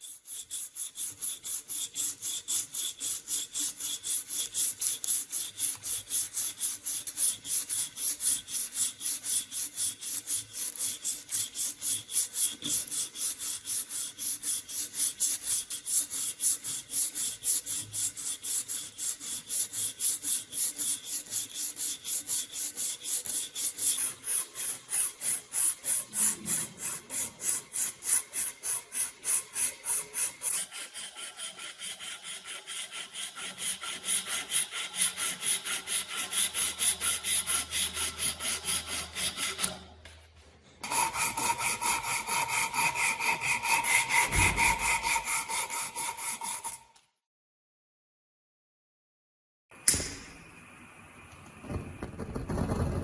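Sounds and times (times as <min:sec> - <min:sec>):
abrasive scraping strokes: 0:25.8 - 0:27.6, 0:43.7 - 0:46.8.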